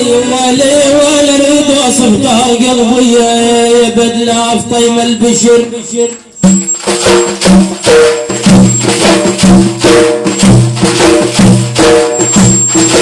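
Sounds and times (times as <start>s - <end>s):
steady percussion beat: 0.0s - 13.0s
instrumental melody: 6.4s - 13.0s.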